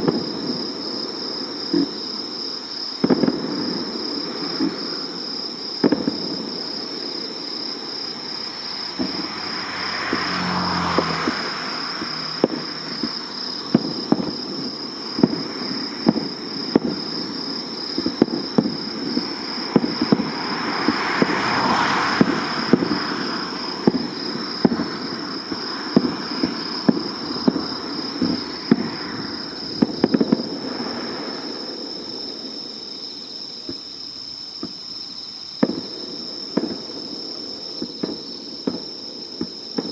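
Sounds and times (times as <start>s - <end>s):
fireworks bangs: 0.0s - 34.8s, 35.5s - 39.9s.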